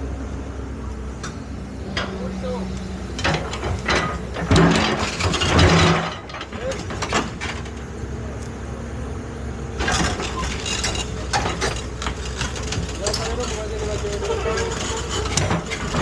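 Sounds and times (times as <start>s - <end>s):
excavator engine running: 0.0s - 16.0s
metallic clanking and scraping: 3.0s - 7.9s, 9.8s - 16.0s.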